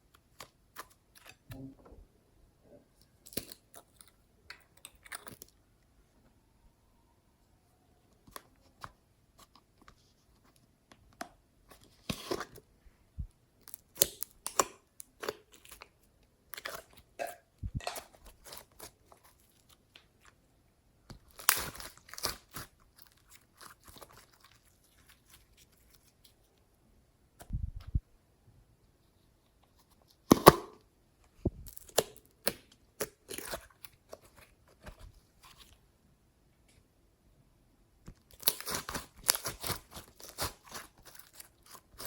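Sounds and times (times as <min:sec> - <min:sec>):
slime squishing with crackles: 0:13.3 - 0:26.8, 0:31.3 - 0:35.9, 0:38.0 - 0:42.0.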